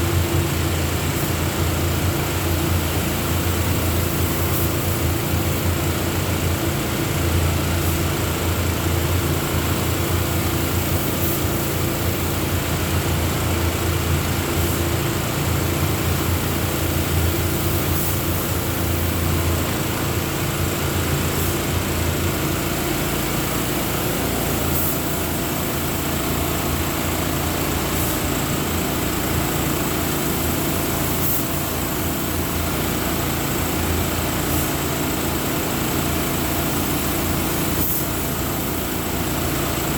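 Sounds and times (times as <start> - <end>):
spray hiss: 16.6 - 19.2, 23.4 - 26.2, 27.4 - 33.5, 34.4 - 39.9.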